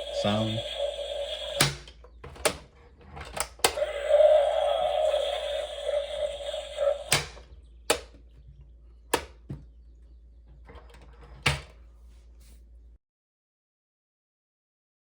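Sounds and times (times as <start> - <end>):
toy electronic buzzing whir: 0.0 - 1.8, 3.7 - 7.4.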